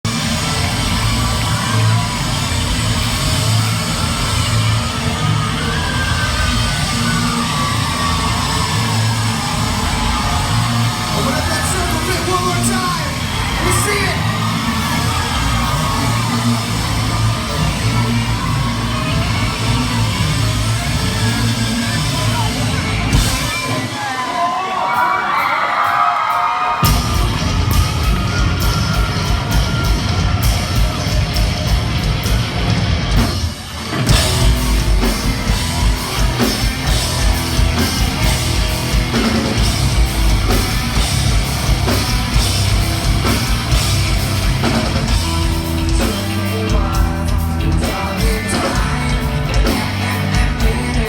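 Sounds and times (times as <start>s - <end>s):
heavy bass line: 0.0s - 23.8s, 26.8s - 51.0s
live rock band playing: 0.0s - 51.0s
voices yelling along: 0.1s - 51.0s.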